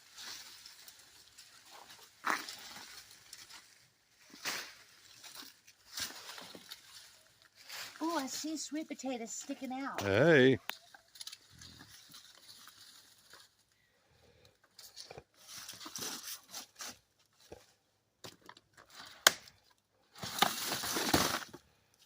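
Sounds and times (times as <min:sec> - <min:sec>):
dry vines rustling and tearing: 0:00.0 - 0:08.3, 0:10.7 - 0:13.7, 0:14.9 - 0:17.0.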